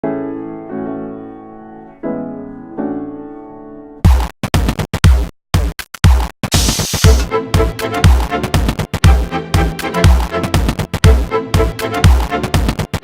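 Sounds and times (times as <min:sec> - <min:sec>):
chopped stuttering beat: 0:04.0 - 0:13.0
sustained keyboard chords: 0:07.1 - 0:13.0.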